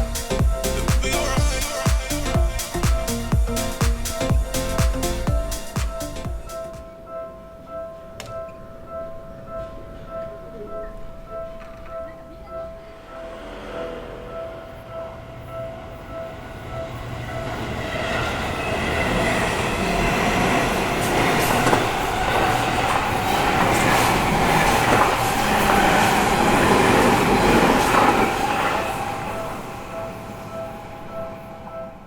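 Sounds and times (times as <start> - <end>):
electric train passing: 0.0 - 32.0
pulsing crossing warning bell: 12.4 - 32.0.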